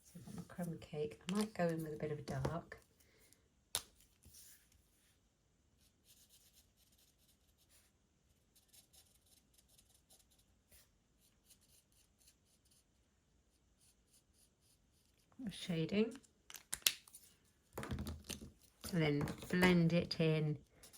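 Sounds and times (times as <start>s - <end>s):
marker scratching on cardstock: 8.6s - 10.5s.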